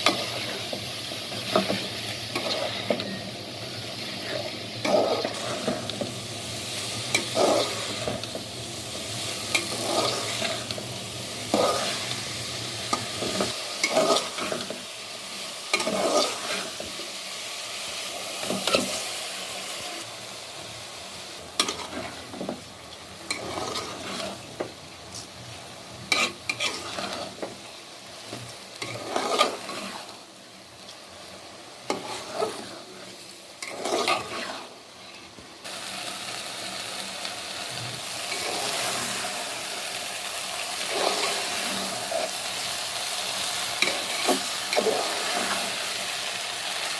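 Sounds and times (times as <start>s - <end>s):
spatula scraping a pan: 0.0s - 3.3s, 4.0s - 14.9s, 15.7s - 17.0s, 18.4s - 19.0s, 21.6s - 22.6s, 23.3s - 24.6s, 26.1s - 27.6s, 28.3s - 30.2s, 31.9s - 35.2s, 38.3s - 39.3s, 40.8s - 42.6s, 43.8s - 45.9s
food sizzling in a pan: 0.0s - 46.9s.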